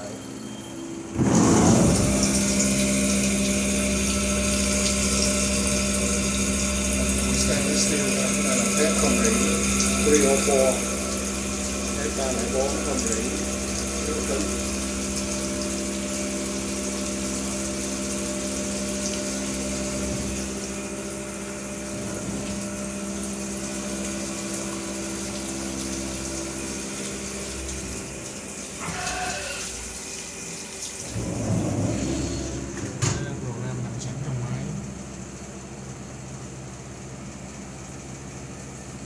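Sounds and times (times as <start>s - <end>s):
milling machine humming: 0.0s - 39.0s
coolant spraying hiss: 1.2s - 21.9s.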